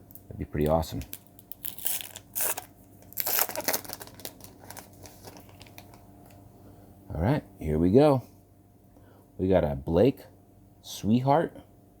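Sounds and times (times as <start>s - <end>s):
wrapper ripping and crinkling: 0.0s - 6.0s.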